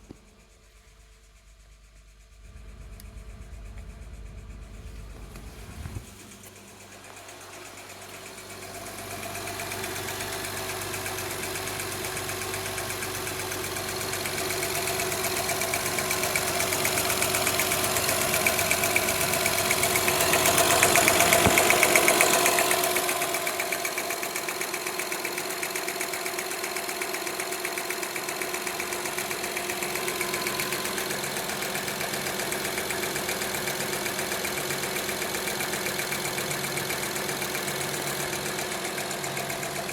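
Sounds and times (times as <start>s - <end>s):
car engine running: 0.0s - 39.9s
rapid engine ticking: 0.1s - 39.9s.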